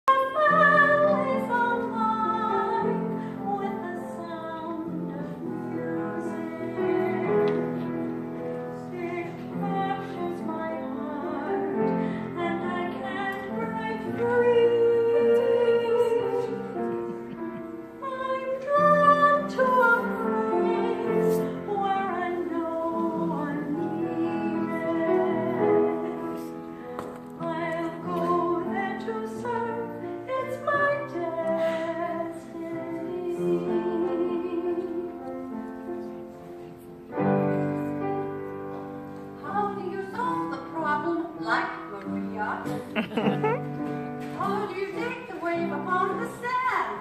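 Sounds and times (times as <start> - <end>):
woman singing slow melody: 8.8 - 17.3, 18.0 - 26.5, 27.4 - 35.3.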